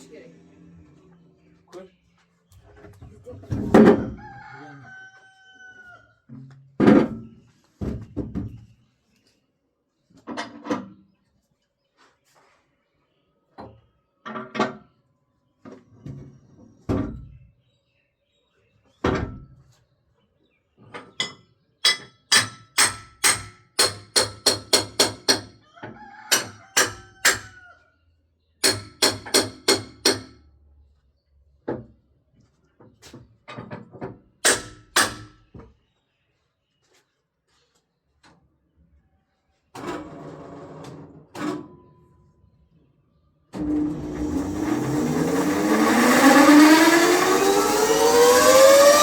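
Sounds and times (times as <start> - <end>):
sharp ringing knocks: 21.2 - 25.6, 28.6 - 30.4, 34.4 - 35.5.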